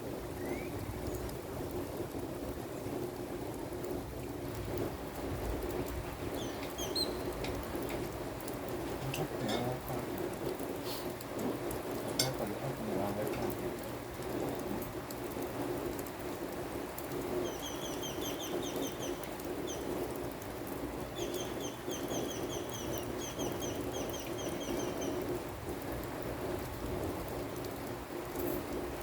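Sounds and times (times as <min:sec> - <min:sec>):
rain falling: 0:00.0 - 0:29.0
bird rapid high chirps: 0:06.3 - 0:07.3, 0:17.4 - 0:19.9, 0:21.2 - 0:25.2.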